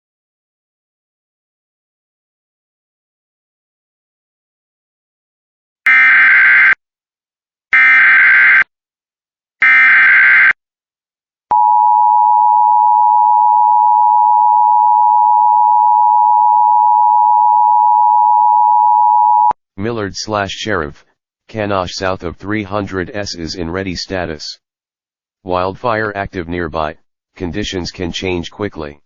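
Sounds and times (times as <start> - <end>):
steady attention tone: 11.5 - 19.5.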